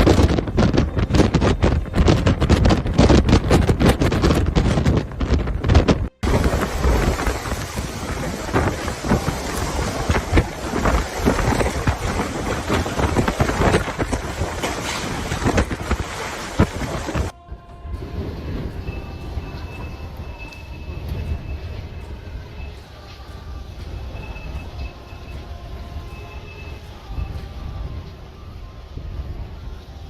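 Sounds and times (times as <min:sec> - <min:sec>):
rain patters: 0:00.0 - 0:17.3
wind buffeting microphone: 0:00.0 - 0:30.0
wind-driven rain hissing: 0:00.0 - 0:30.0.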